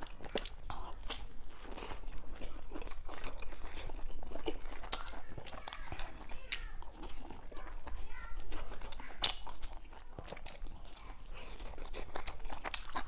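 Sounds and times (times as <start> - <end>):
person chewing food: 0.0 - 13.0
wet mouth clicks and smacks: 8.7 - 11.0.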